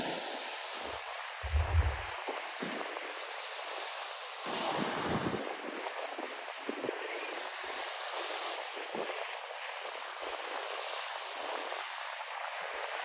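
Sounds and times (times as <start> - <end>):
surf washing onto beach: 1.4 - 2.1
wind buffeting microphone: 1.4 - 2.2.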